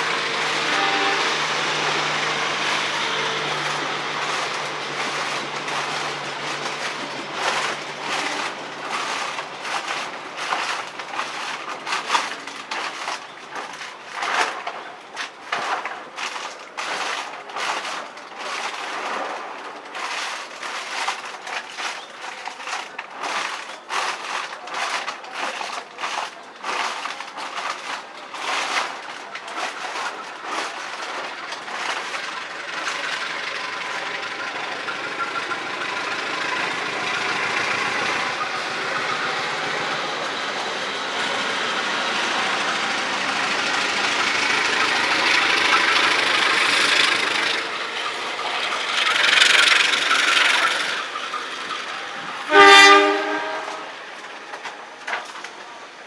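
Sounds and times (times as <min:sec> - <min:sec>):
rail noise rushing: 0:00.0 - 0:15.0, 0:27.5 - 0:56.0
train wheels clicking on rail joints: 0:00.0 - 0:56.0.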